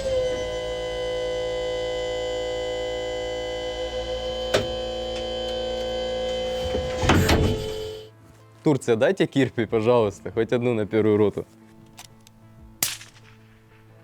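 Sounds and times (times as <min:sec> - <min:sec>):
hydraulic motor whine: 0:00.0 - 0:08.1.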